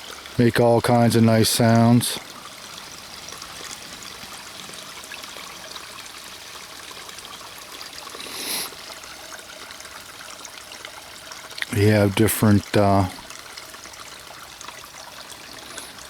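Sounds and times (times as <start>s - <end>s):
stream running over rocks: 0.0s - 16.0s
brief hiss: 8.2s - 8.8s.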